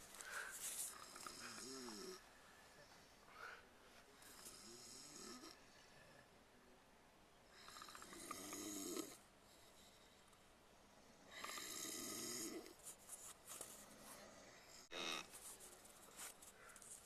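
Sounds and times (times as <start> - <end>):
faint snoring: 0.3 - 2.3, 3.4 - 6.3, 7.5 - 12.8, 13.7 - 15.3.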